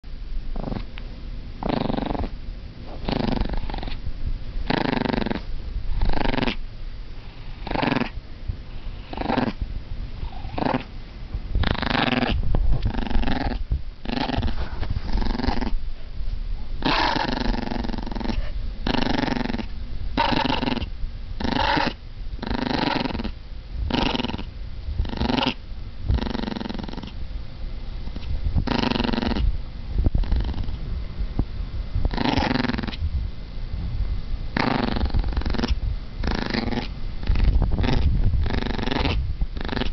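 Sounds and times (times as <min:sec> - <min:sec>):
dog growling: 0:00.5 - 0:00.9, 0:01.6 - 0:04.0, 0:04.6 - 0:06.6, 0:07.2 - 0:09.6, 0:10.2 - 0:10.9, 0:11.6 - 0:15.8, 0:16.8 - 0:27.2, 0:28.1 - 0:29.5, 0:30.1 - 0:30.8, 0:32.1 - 0:33.0, 0:34.5 - 0:39.9.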